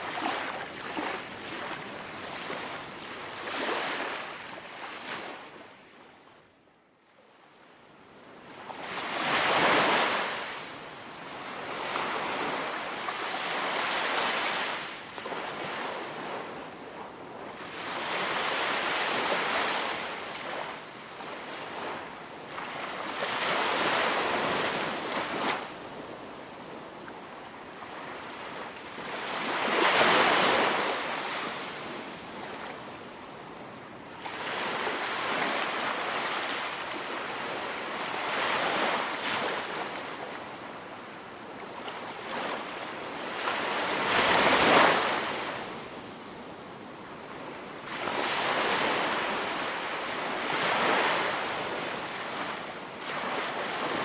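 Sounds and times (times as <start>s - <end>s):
ocean waves breaking on beach: 0.0s - 5.4s, 41.8s - 46.3s, 47.3s - 54.0s.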